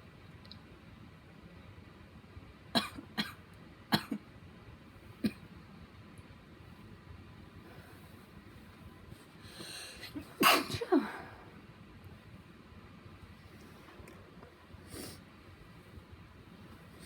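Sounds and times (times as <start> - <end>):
stifled sneezes: 10.0 - 11.3.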